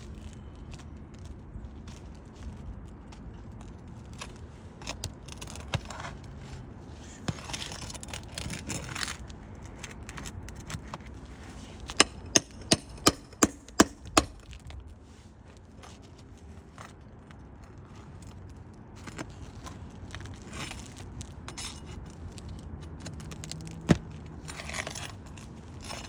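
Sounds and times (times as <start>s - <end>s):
scraping and rustling of shingles: 0.0s - 26.0s
hammer driving nail: 11.9s - 14.4s.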